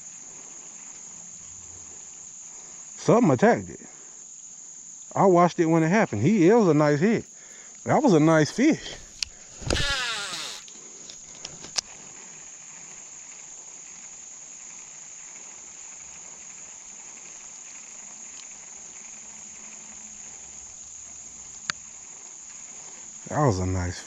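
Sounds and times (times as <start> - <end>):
insects trilling: 0.0 - 24.0
sharp clicks: 8.9 - 10.8.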